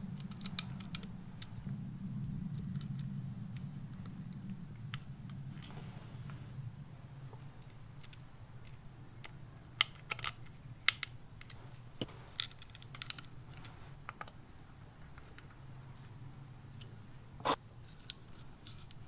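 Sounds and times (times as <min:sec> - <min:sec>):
faint low hum: 0:00.0 - 0:19.0.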